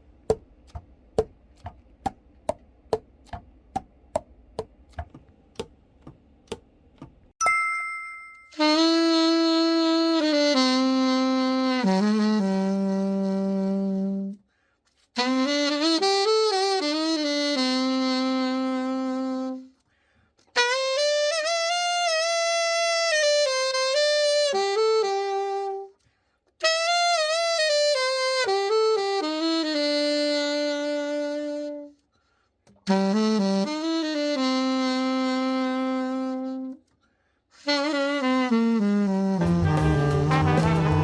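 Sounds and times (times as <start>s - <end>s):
solo alto saxophone: 8.6s - 14.4s, 15.1s - 19.8s, 20.5s - 26.0s, 26.6s - 32.1s, 32.8s - 36.9s, 37.5s - 41.0s.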